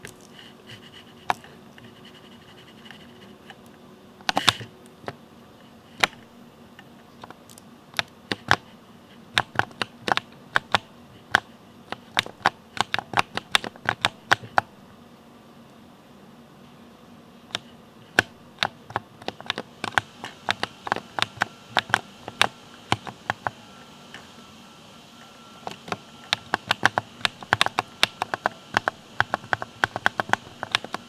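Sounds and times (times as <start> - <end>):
mechanical keyboard typing: 1.3 - 5.2, 6.0 - 6.3, 7.2 - 8.7, 9.3 - 14.7, 17.5 - 24.4, 25.2 - 31.0.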